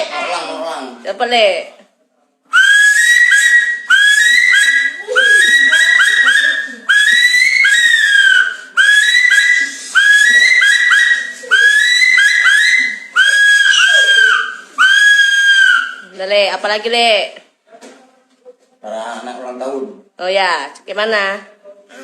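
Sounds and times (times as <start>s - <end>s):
high whistle-like chirping: 2.5s - 16.2s.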